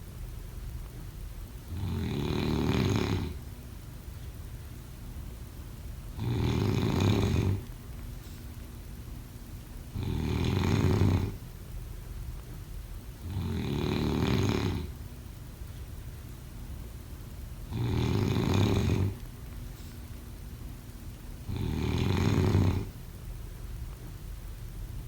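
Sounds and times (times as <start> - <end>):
person snoring: 1.7 - 3.4, 6.2 - 7.6, 10.0 - 11.4, 13.3 - 14.9, 17.7 - 19.2, 21.5 - 22.9.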